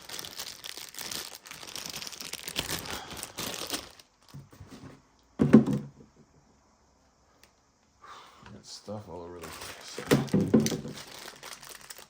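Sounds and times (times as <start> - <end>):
plastic packaging crinkling: 0.0 - 4.6, 9.4 - 12.0.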